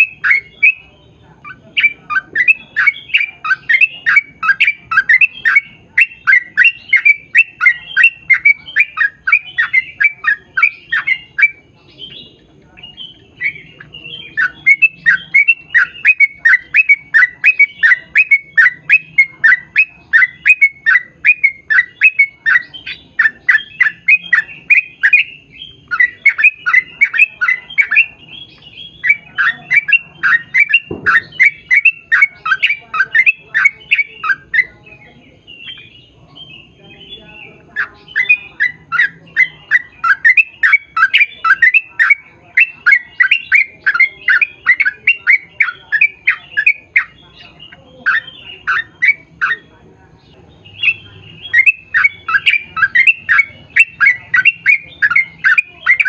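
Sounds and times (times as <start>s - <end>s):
bulbul singing chattering notes: 0.0s - 56.0s.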